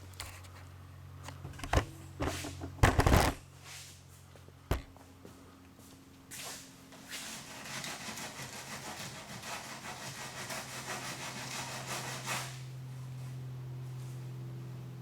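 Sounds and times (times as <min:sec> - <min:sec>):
steady low hum: 0:00.0 - 0:07.1
fast rhythmic rubbing: 0:07.2 - 0:12.6.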